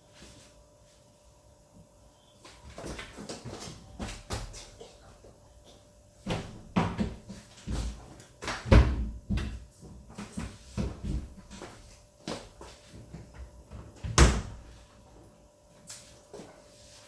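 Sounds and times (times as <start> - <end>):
washing machine knocking and banging: 6.2 - 11.7, 13.0 - 14.8.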